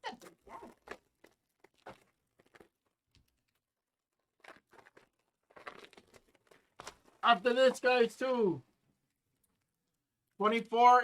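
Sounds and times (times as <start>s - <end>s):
crinkles: 0.1s - 7.2s, 8.8s - 10.4s.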